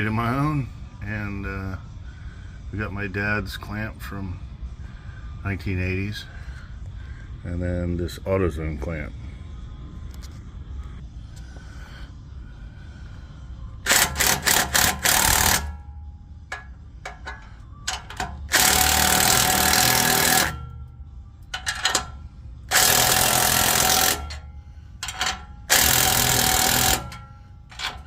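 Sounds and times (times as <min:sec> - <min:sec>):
steady low hum: 0:00.0 - 0:28.0
welder crackling buzz: 0:18.5 - 0:20.7, 0:25.1 - 0:27.2.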